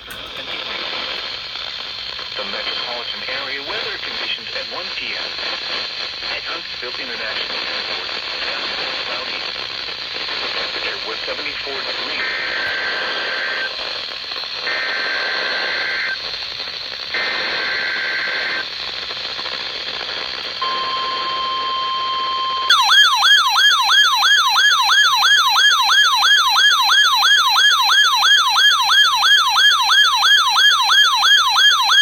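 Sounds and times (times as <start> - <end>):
radio hiss: 0.0 - 22.9
shrill two-tone data bursts: 20.6 - 32.0
steady warning alarm tone: 20.6 - 32.0
warbling electronic alert alarm: 20.6 - 32.0.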